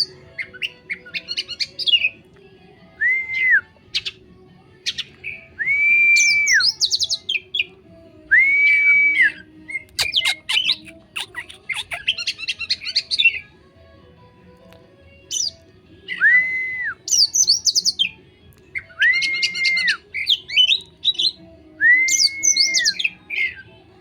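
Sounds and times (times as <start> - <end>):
bird chirps and twitters: 0.0 - 2.2, 4.8 - 5.5, 6.2 - 7.8, 9.2 - 13.6, 15.2 - 15.6, 17.0 - 21.4, 22.1 - 23.7
bird whistling: 4.9 - 7.4, 8.3 - 13.4, 15.3 - 18.1, 18.8 - 23.7.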